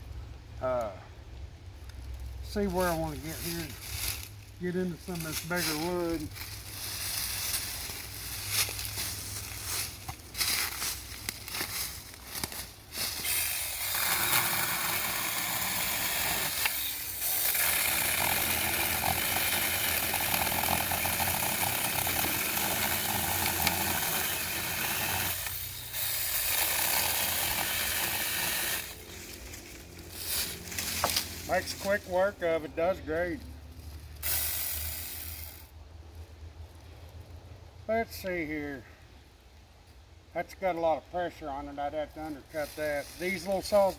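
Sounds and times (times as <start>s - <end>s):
chainsaw cutting wood: 12.4s - 29.1s, 30.1s - 32.0s, 34.2s - 35.7s.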